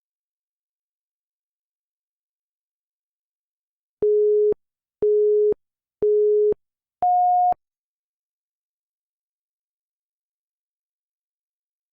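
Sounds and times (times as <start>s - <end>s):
short electronic beeps: 4.0s - 7.6s
higher-pitched beep: 7.0s - 7.6s.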